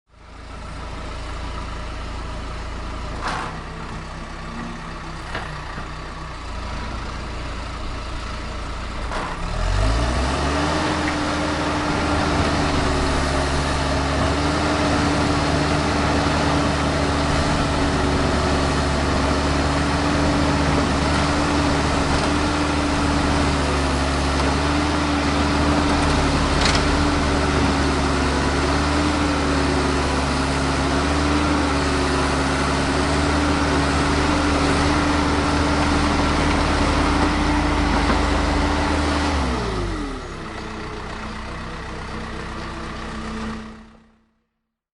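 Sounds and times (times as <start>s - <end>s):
small tractor engine: 0.1s - 44.3s.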